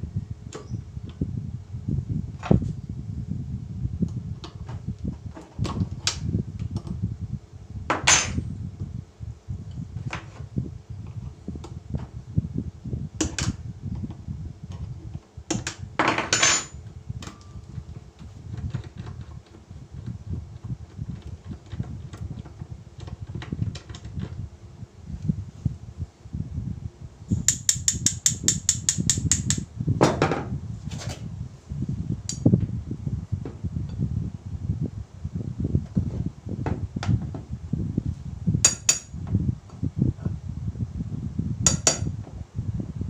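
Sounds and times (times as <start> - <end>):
tools and wood clattering: 15.5 - 19.6.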